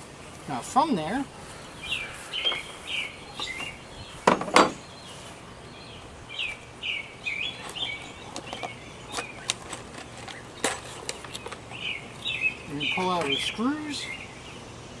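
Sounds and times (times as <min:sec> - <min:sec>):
birds chirping: 0:00.0 - 0:15.0
sharp knocks: 0:04.2 - 0:04.8.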